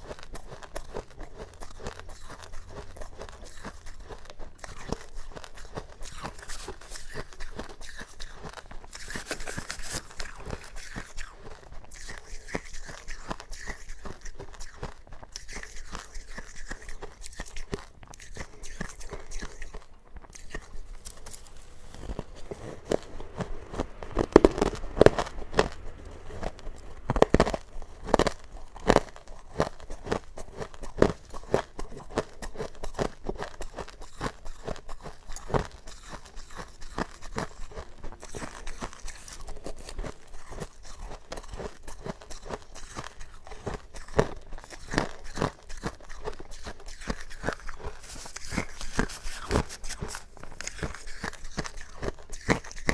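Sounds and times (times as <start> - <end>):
chewing crunchy frost: 0.0 - 52.9
sharp crunchy bites: 18.1 - 32.2.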